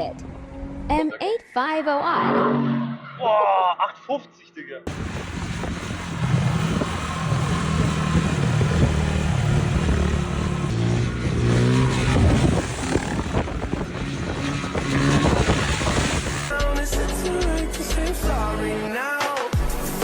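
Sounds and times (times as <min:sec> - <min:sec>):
vehicle engines running: 0:00.0 - 0:01.0, 0:04.9 - 0:16.7
wind rushing: 0:04.9 - 0:16.6.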